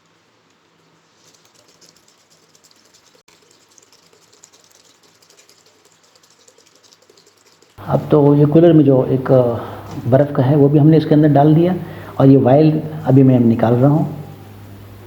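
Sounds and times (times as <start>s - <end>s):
ice clicking in water: 1.2s - 7.8s.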